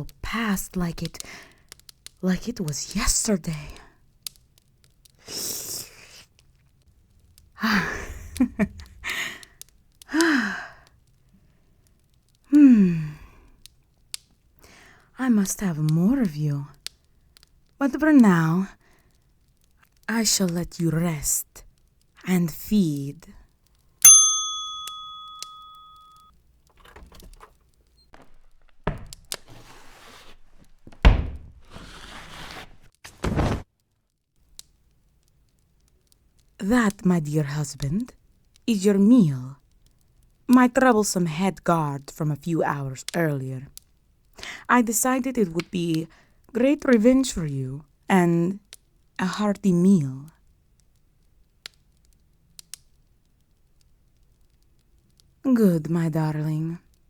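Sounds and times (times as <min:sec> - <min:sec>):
woman breathing and sighing: 0:07.1 - 0:11.6, 0:12.5 - 0:13.6
woman moaning: 0:07.6 - 0:09.4, 0:12.5 - 0:13.2
knocks and shuffling: 0:26.7 - 0:33.6
rustling dragging noise: 0:26.7 - 0:33.6
sharp thunk: 0:31.0 - 0:31.6
loud heavy thud: 0:31.0 - 0:31.7.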